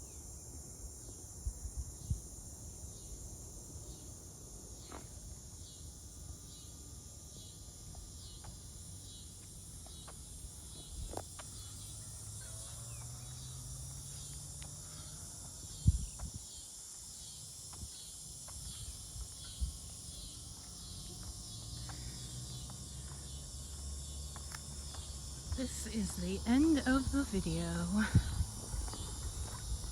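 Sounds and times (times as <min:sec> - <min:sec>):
high constant hiss: 0:00.0 - 0:29.9
insects chirping: 0:00.0 - 0:29.9.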